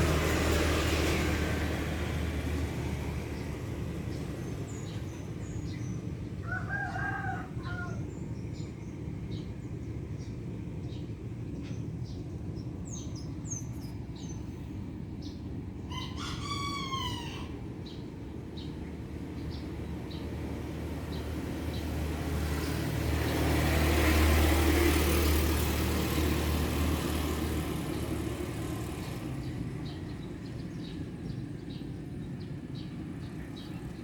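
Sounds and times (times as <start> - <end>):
small birds chirping: 3.2 - 7.0, 7.6 - 23.5, 27.0 - 34.0
rooster crowing: 6.4 - 8.0, 15.9 - 17.6.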